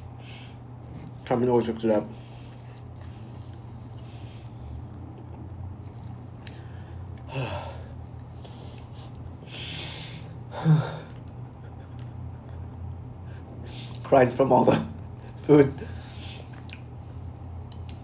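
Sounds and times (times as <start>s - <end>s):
steady low hum: 0.0s - 18.0s
person exhaling: 6.6s - 8.0s, 9.5s - 11.2s
person sighing: 7.3s - 8.0s, 10.5s - 11.2s.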